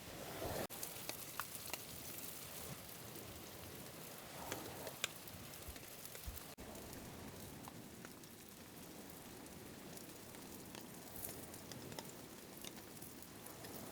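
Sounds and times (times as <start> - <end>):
raindrop ticks: 9.8 - 13.9.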